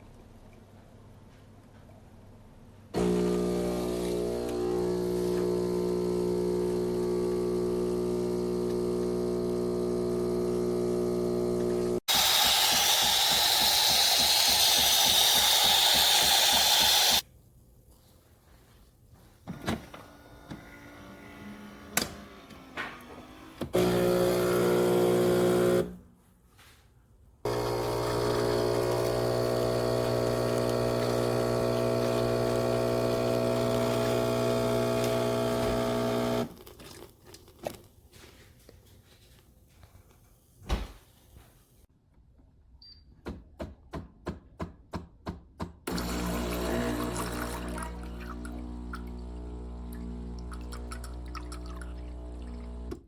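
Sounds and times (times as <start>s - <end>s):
espresso machine motor hum: 3.0s - 17.2s, 23.8s - 26.0s, 27.5s - 36.6s, 45.9s - 53.0s.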